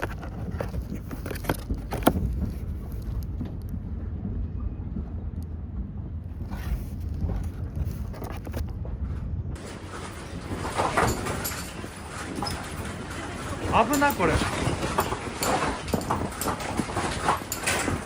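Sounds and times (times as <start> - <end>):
vehicle rumble: 0.0 - 18.0
clicks and knocks: 9.6 - 18.0.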